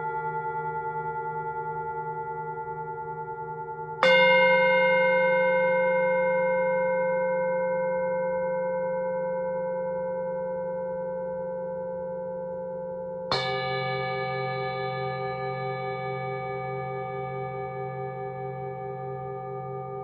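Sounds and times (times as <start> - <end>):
singing bowl ringing: 13.3 - 20.0.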